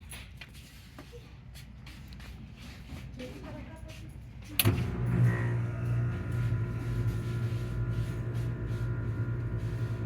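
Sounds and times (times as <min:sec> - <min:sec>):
hvac unit electric hum: 0:00.0 - 0:10.0.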